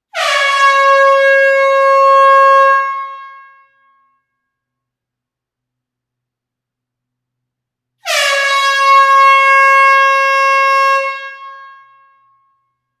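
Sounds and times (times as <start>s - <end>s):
air horn blast: 0.1s - 3.5s, 8.0s - 12.0s.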